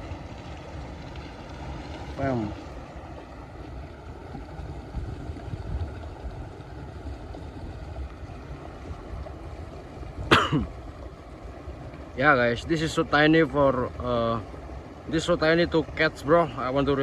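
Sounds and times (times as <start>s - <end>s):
wind buffeting microphone: 0.0s - 14.9s.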